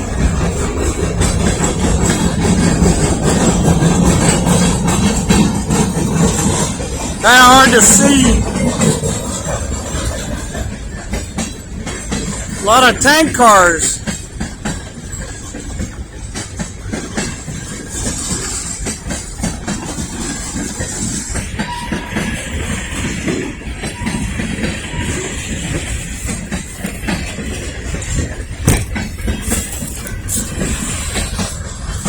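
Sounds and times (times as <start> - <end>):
steel wheels rumbling on rail: 0.0 - 32.0
wheels clicking over rail joints: 0.0 - 32.0.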